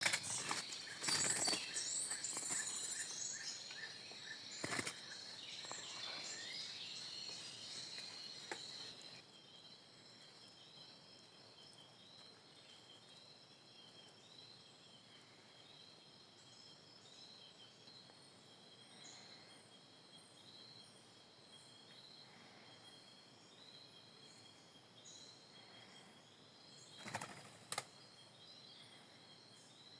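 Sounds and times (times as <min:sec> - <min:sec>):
birds calling and chirping: 0:00.0 - 0:09.2, 0:21.6 - 0:29.9.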